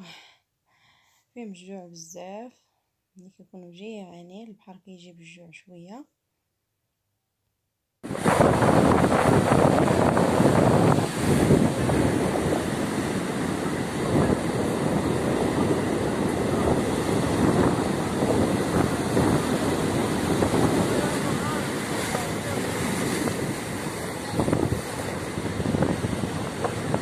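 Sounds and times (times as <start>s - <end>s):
sea surf washing onto beach: 8.0s - 27.0s
wind buffeting microphone: 8.0s - 27.0s.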